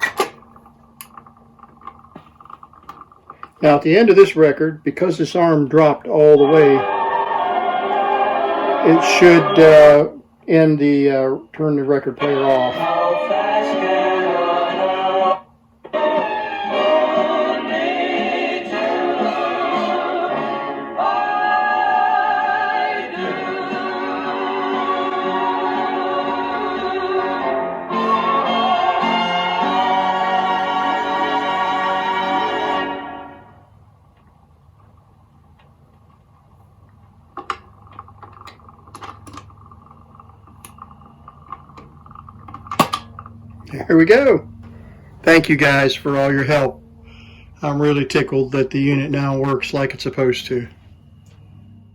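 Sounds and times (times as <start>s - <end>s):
turntable motor hum: 0.0s - 11.0s, 11.6s - 45.3s
vocal music from vinyl record: 6.1s - 10.3s, 12.1s - 33.5s.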